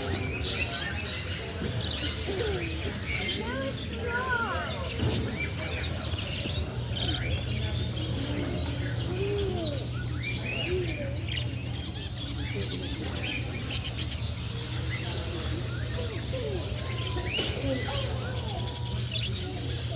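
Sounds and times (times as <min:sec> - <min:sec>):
caged birds chirping: 0:00.0 - 0:19.9
low background hum: 0:00.0 - 0:19.9.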